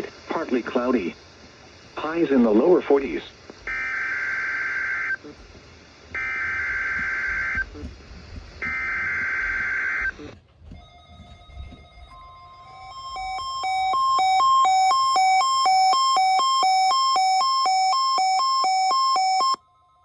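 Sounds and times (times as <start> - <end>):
radio hiss: 0.0 - 10.4
faint steady tone: 0.0 - 20.0
buzzy digital data bursts: 2.0 - 7.9, 12.7 - 19.4.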